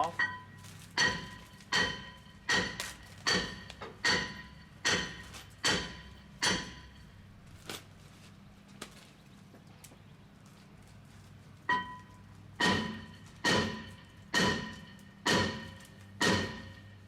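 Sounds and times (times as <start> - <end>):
hammer striking metal: 0.1 - 7.1, 11.7 - 17.0.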